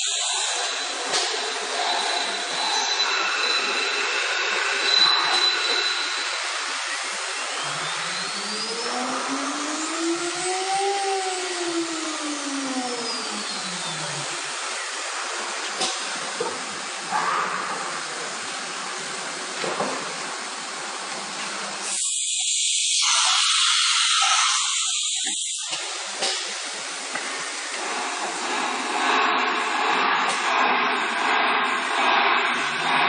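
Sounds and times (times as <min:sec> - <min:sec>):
loud hiss: 0:00.0 - 0:10.1, 0:13.0 - 0:33.0
steady machine noise: 0:00.0 - 0:19.6, 0:22.9 - 0:33.0
router spindle whining: 0:07.6 - 0:14.3.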